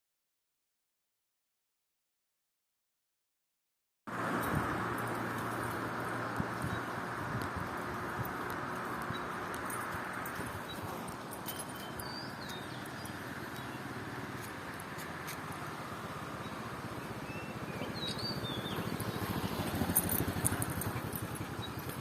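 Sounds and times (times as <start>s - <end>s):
bird chirps: 11.5s - 13.9s, 16.4s - 19.7s, 20.5s - 22.0s
small motorcycle engine running: 12.7s - 22.0s.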